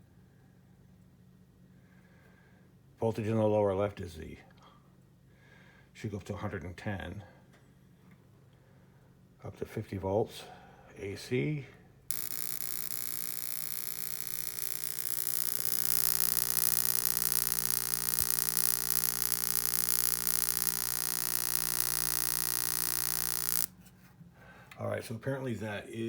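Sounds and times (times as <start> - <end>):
electric arc buzzing and hissing: 12.1 - 23.7
steady mains hum: 12.1 - 23.7.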